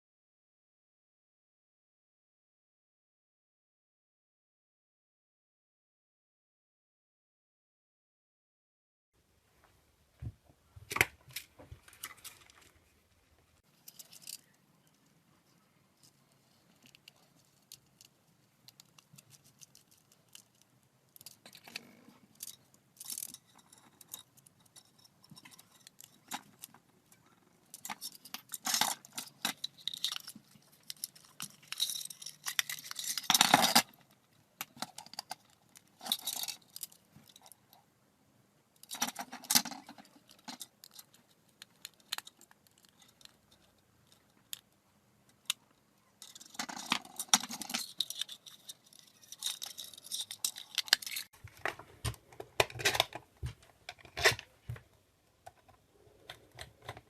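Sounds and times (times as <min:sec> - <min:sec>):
small hard objects rattling: 0:27.6 - 0:34.0, 0:46.2 - 0:51.8.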